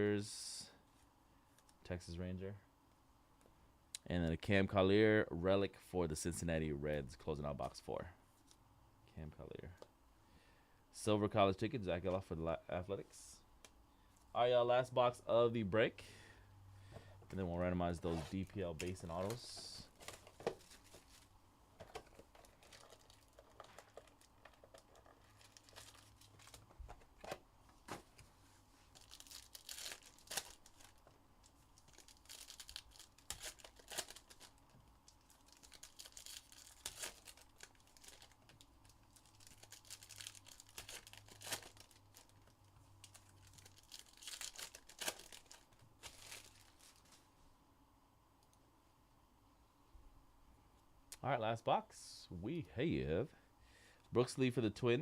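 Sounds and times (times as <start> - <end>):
packaging tearing and crinkling: 22.0 - 27.4, 28.9 - 31.1, 31.8 - 47.2.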